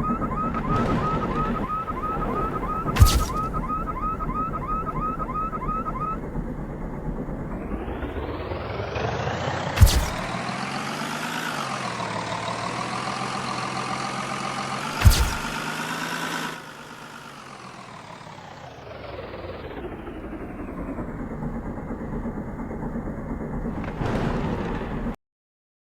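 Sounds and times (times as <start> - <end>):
sharp bangs: 0.0 - 7.8, 9.7 - 10.6, 14.8 - 15.7
vehicle engine running: 0.0 - 25.2.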